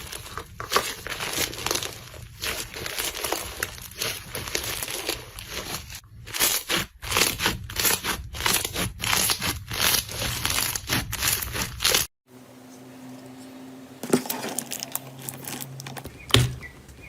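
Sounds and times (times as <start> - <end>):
slime squeezed crackling and popping: 0.0 - 12.0.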